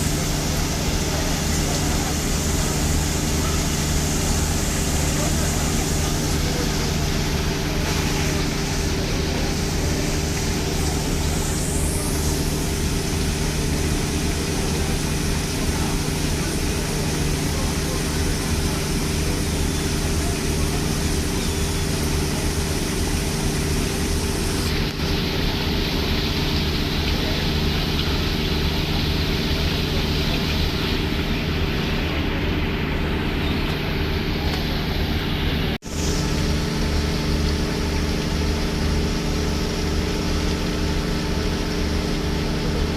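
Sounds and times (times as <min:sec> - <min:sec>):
broad steady hiss: 0:00.0 - 0:32.2
boat engine running: 0:00.0 - 0:42.9.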